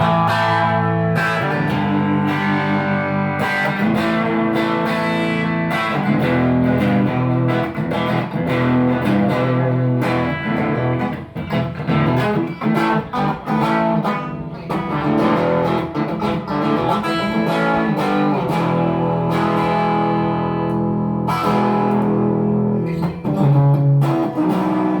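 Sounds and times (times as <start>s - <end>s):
electric guitar through tube amp: 0.0s - 25.0s.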